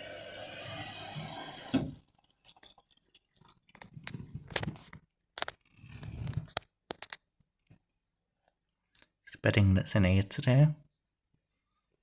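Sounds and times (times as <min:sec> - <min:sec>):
water filling washing machine: 0:00.0 - 0:02.9
crackling rustles: 0:03.8 - 0:07.2.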